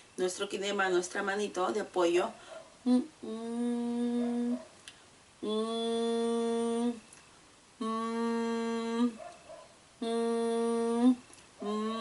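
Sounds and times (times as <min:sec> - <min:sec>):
breaths: 0:02.4 - 0:02.7
woman humming: 0:02.8 - 0:04.6, 0:05.4 - 0:07.1, 0:07.8 - 0:09.2, 0:10.0 - 0:12.0.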